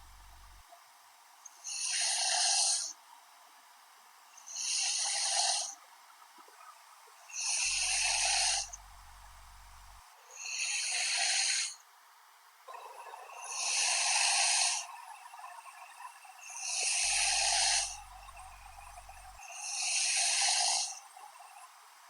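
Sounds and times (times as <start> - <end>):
woman snoring: 1.7 - 2.9, 4.5 - 5.8, 7.4 - 11.8, 13.5 - 14.9, 16.5 - 18.3, 19.0 - 21.0.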